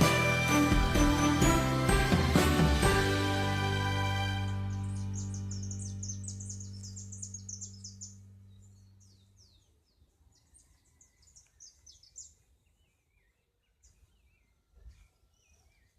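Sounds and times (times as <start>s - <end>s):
low held music chord: 0.0s - 9.2s
small birds chirping: 0.0s - 15.9s.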